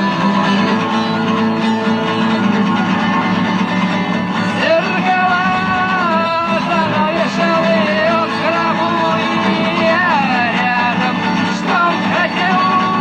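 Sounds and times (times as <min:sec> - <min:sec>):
strummed guitar: 0:00.0 - 0:13.0
man singing long sliding notes: 0:04.4 - 0:13.0.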